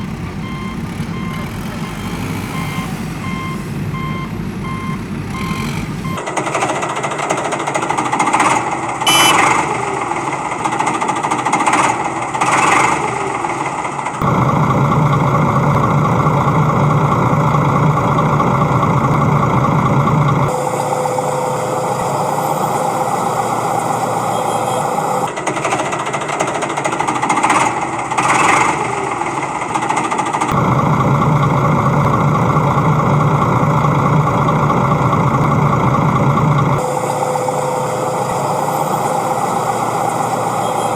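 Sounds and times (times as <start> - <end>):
backhoe loader engine running: 0.0 - 40.9
rattling clatter: 25.3 - 36.8.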